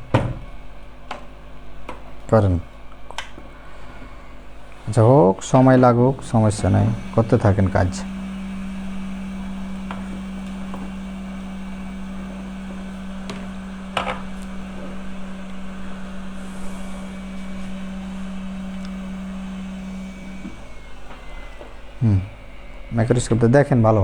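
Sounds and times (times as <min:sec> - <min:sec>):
hot air gun blowing: 0:06.0 - 0:23.7.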